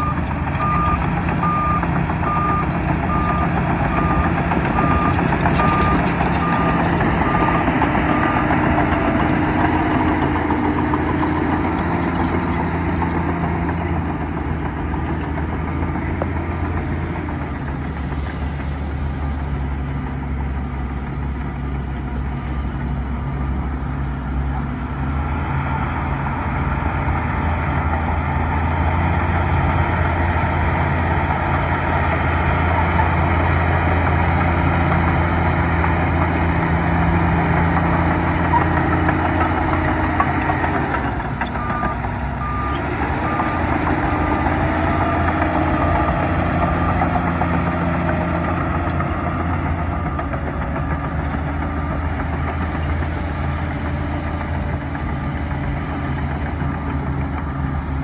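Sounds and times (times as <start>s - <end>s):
reverse alarm beeping: 0.0s - 8.5s
bulldozer diesel engine: 0.0s - 58.0s.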